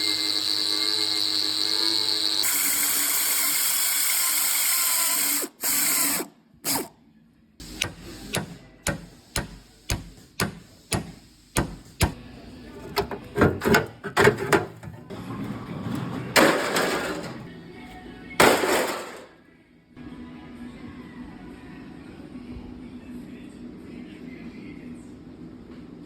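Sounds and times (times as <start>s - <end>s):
power tool running: 0.0s - 6.9s, 7.6s - 12.2s.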